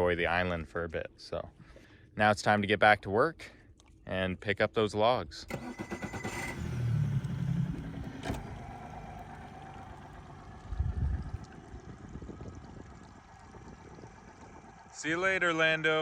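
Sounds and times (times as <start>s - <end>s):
engine running: 5.5s - 16.0s.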